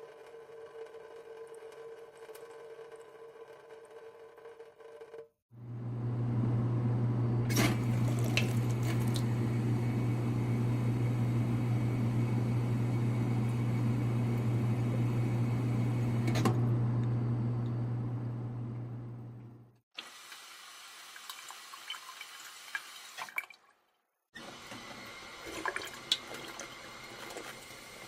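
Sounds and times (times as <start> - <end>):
low hum: 5.6 - 19.8
moving liquid: 7.5 - 9.6.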